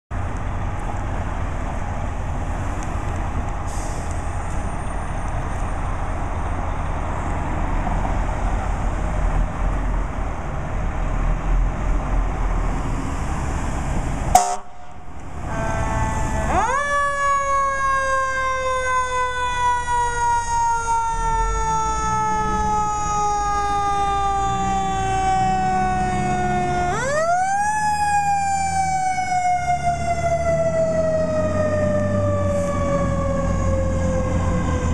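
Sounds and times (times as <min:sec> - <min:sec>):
engine rumble: 0:00.1 - 0:34.9
fire truck siren: 0:14.0 - 0:34.9.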